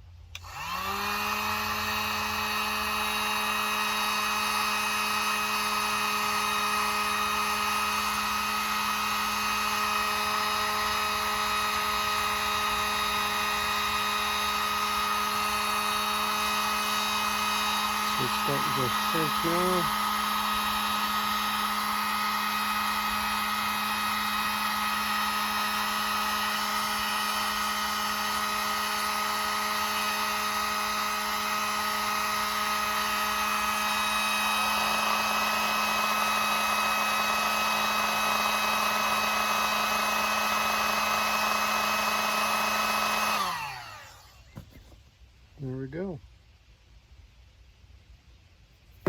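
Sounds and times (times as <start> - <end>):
heat gun motor whine and air rush: 0.0 - 45.0.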